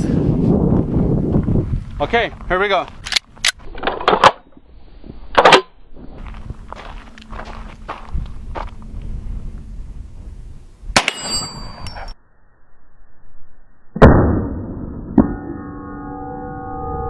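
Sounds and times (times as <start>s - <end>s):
bullet striking steel plate: 11.0s - 12.0s
metal plate ringing: 11.0s - 12.0s.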